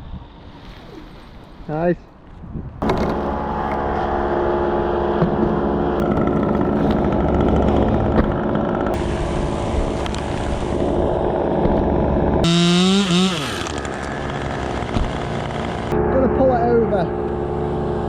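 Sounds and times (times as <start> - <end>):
engine running steadily: 2.8 - 18.0.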